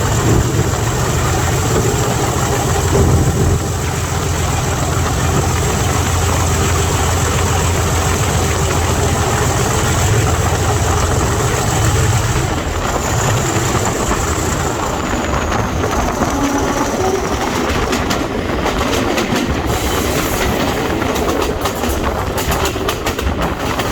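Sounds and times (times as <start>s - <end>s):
locomotive high whistle: 0.0s - 17.8s
diesel locomotive engine drone: 0.0s - 23.9s
train wheels clicking over rail joints: 0.0s - 23.9s.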